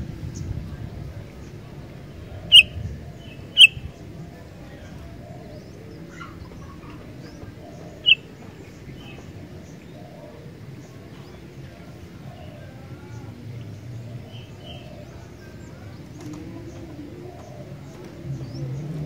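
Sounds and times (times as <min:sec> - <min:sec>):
bird calling sharp notes: 0:02.5 - 0:02.8, 0:03.4 - 0:03.8, 0:08.0 - 0:08.3
faint bird chirps: 0:02.5 - 0:04.0, 0:07.7 - 0:09.3.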